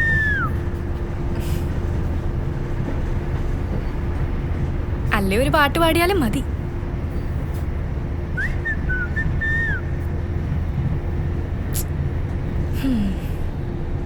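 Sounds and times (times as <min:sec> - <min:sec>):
person whistling: 0:00.0 - 0:00.6, 0:08.4 - 0:09.9
train interior rumble: 0:00.0 - 0:14.0.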